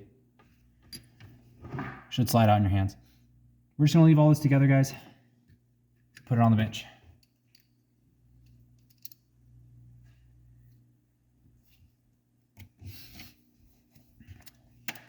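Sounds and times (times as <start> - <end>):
low steady hum: 0.0 - 15.0
small metal parts clinking: 8.4 - 9.3.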